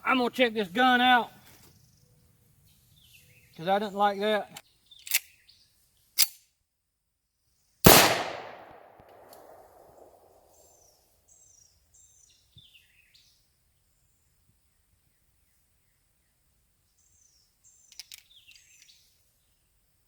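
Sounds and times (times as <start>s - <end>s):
bird chirping: 1.6s - 5.8s, 15.1s - 19.6s
sharp click: 7.9s - 9.8s
pistol shot echoing: 7.9s - 10.3s.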